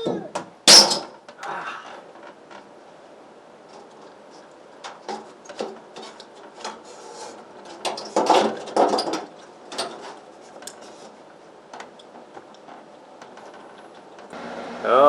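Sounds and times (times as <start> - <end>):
air conditioner unit knocking and scraping: 3.6 - 14.3.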